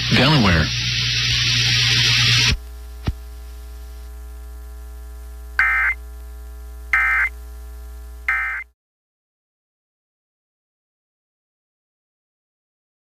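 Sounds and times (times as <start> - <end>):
loud static hiss: 0.0 - 8.6
low steady hum: 2.5 - 8.7
alert data tone bursts: 5.6 - 6.0, 7.0 - 7.3, 8.3 - 8.7.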